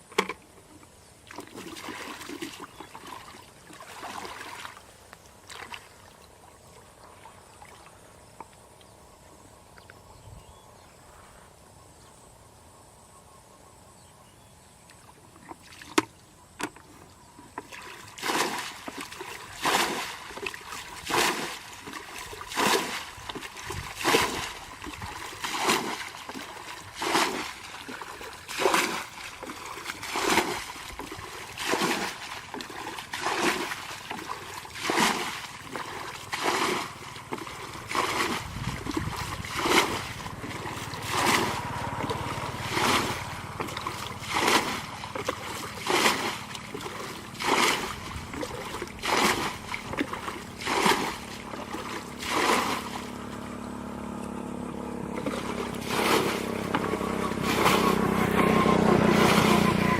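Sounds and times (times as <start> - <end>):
rhythmic water splashing: 17.7 - 59.9.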